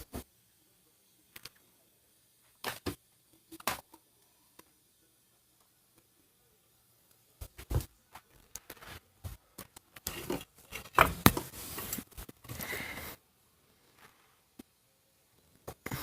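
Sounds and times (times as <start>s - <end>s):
rustling and scraping: 7.4s - 13.1s.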